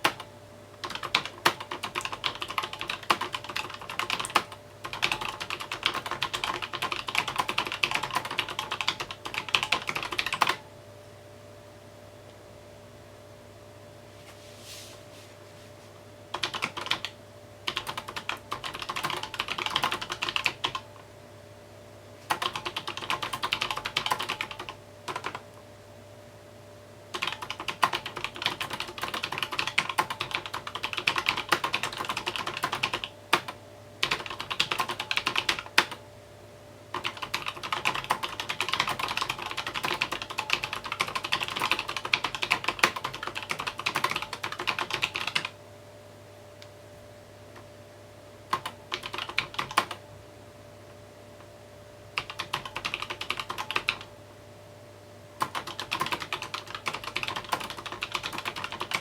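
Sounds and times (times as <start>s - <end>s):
fast typing on mechanical keyboard: 0.0s - 10.6s, 16.3s - 20.9s, 22.3s - 25.4s, 27.1s - 36.0s, 36.9s - 45.5s, 48.5s - 50.0s, 52.2s - 54.1s, 55.4s - 59.0s
faint steady hum: 0.0s - 59.0s.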